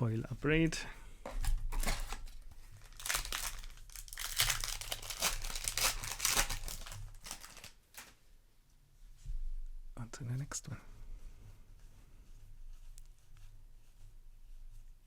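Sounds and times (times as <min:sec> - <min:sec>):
foil wrapper crinkling: 0:01.3 - 0:08.2.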